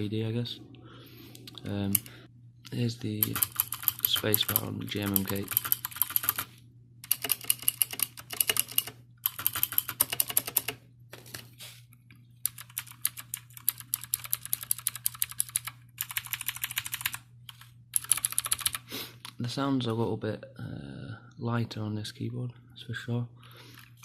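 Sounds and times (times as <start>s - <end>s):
faint low hum: 0.0s - 24.0s
mechanical keyboard keys clattering: 3.2s - 11.4s, 12.4s - 18.8s.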